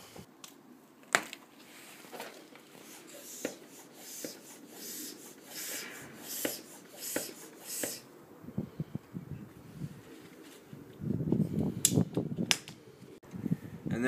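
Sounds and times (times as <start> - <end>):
bicycle pump hissing: 2.8 - 8.1.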